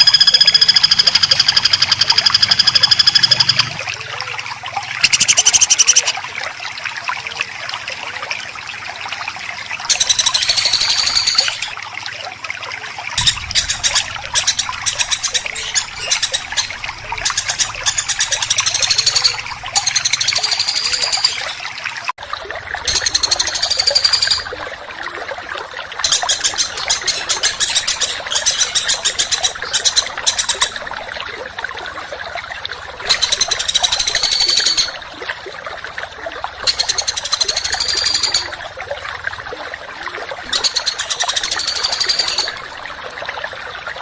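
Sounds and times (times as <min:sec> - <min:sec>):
songbird buzzy chatter: 0:04.9 - 0:06.2, 0:13.2 - 0:21.8
trickling hiss: 0:13.1 - 0:21.9.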